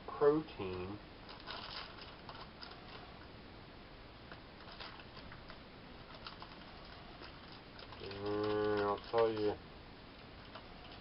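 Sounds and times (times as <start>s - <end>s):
low steady hiss: 0.0s - 11.0s
wrapper clicks and rustles: 0.7s - 3.2s, 4.6s - 9.6s.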